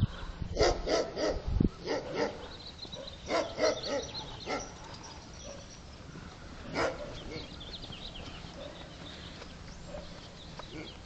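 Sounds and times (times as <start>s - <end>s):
dog barking: 0.1s - 5.7s, 6.7s - 7.5s, 9.9s - 11.0s.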